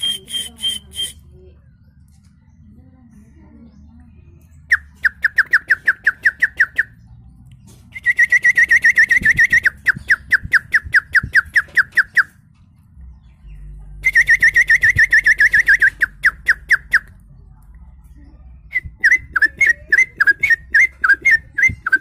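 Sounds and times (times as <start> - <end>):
human imitation of birdsong: 3.2 - 7.2, 7.9 - 12.4, 14.0 - 17.2, 18.1 - 22.0.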